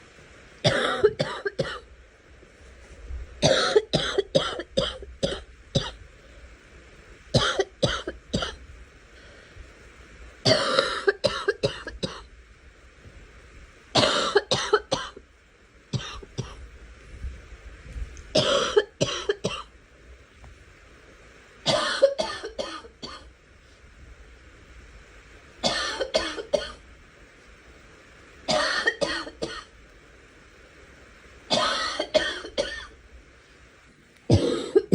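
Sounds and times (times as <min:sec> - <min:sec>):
girl coughing: 0:00.7 - 0:01.8, 0:10.5 - 0:12.2, 0:14.0 - 0:15.1, 0:18.4 - 0:19.6, 0:28.5 - 0:29.6, 0:31.5 - 0:32.9, 0:34.3 - 0:34.9.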